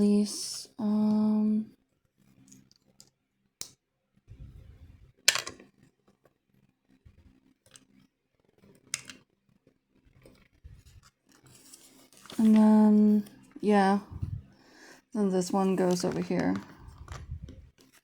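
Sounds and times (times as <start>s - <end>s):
plastic bricks clicking together: 5.3s - 5.7s, 8.9s - 9.2s
faint handling noise: 10.1s - 14.6s, 15.2s - 18.0s.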